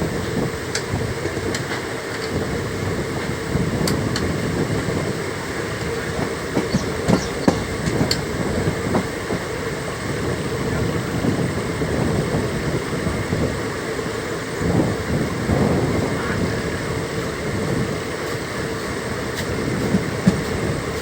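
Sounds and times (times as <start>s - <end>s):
train rumbling on track: 0.0s - 21.0s
wheels clicking over rail joints: 0.1s - 15.2s, 17.0s - 21.0s
sharp knocks: 6.6s - 8.2s.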